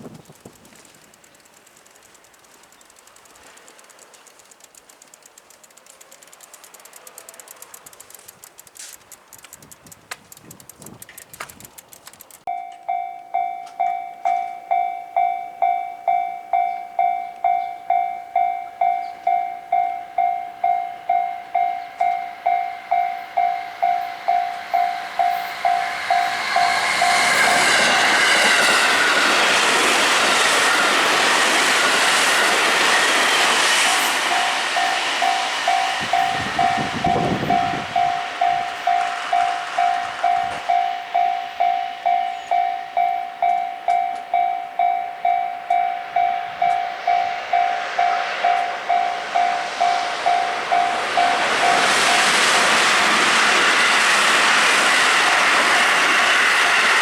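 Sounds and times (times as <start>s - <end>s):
train rushing past: 10.5s - 57.0s
level crossing bell dinging: 12.5s - 28.1s, 34.0s - 52.4s.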